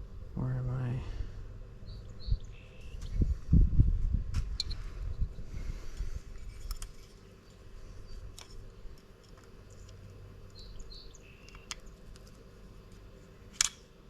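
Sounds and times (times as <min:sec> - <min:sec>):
steady low hum: 0:00.0 - 0:14.0
metal parts clicking: 0:13.5 - 0:13.8.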